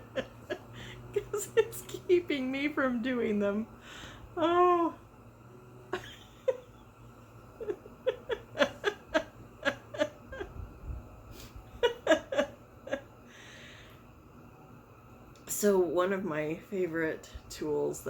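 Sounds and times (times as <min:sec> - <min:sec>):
person laughing breathily: 0:00.0 - 0:01.8, 0:05.9 - 0:13.9.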